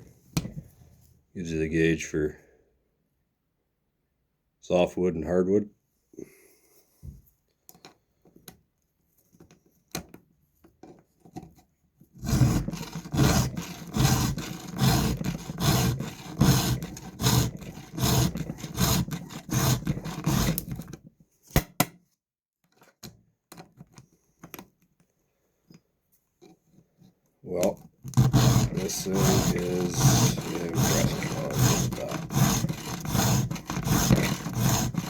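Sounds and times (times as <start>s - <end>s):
file rasping on chain teeth: 12.2s - 20.9s, 28.1s - 35.0s.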